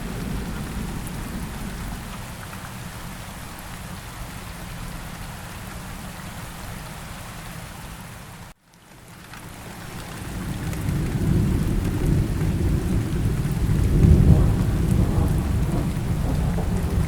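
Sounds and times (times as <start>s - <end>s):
thunder rolling: 0.0s - 2.4s, 10.3s - 17.0s
steady rain: 0.0s - 17.0s.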